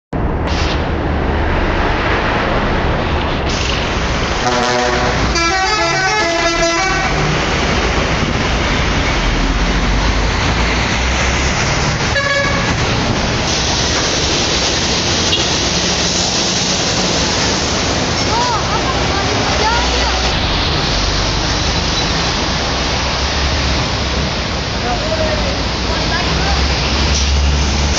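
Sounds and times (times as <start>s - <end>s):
road noise: 0.1s - 27.9s
bus horn melody: 4.4s - 7.4s, 12.1s - 12.8s.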